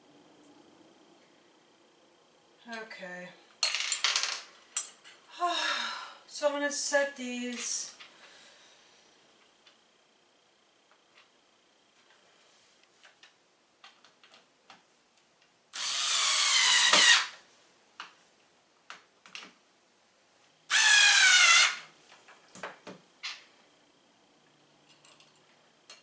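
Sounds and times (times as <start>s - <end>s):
power drill driving screws: 15.8s - 17.4s, 20.7s - 21.9s.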